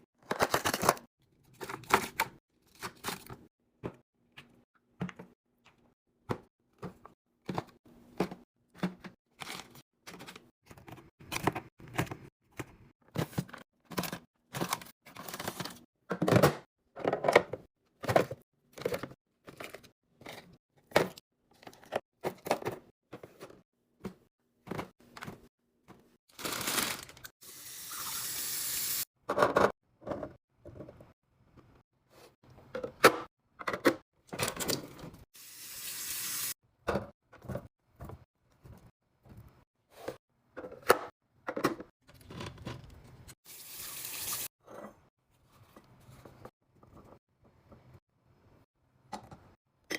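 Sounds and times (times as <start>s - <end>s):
packaging crinkling and clunks: 26.3s - 27.3s.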